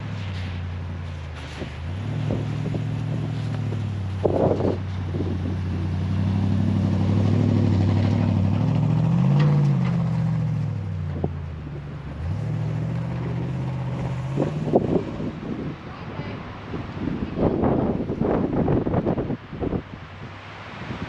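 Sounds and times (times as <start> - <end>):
pickup truck engine revving: 1.4 - 11.3, 12.1 - 15.7.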